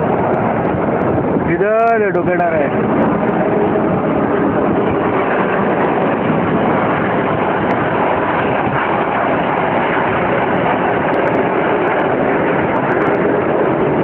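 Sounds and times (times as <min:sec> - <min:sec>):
jet engines roaring: 0:00.0 - 0:14.0.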